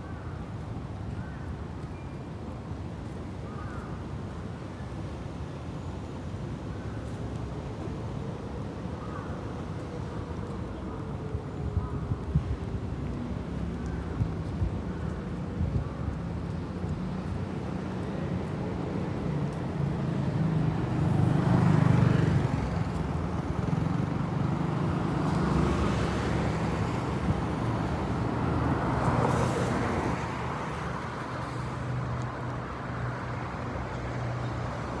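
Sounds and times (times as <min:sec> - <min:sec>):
vehicles passing by: 0:16.1 - 0:35.0.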